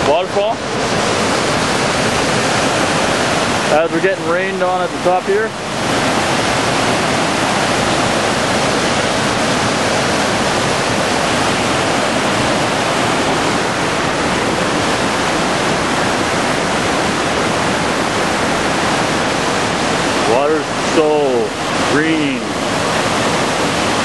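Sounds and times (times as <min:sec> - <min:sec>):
waterfall rushing: 0:00.0 - 0:24.0.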